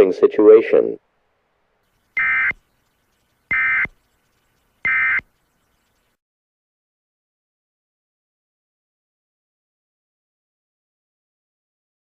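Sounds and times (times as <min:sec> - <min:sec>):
short data bursts: 0:01.9 - 0:06.2.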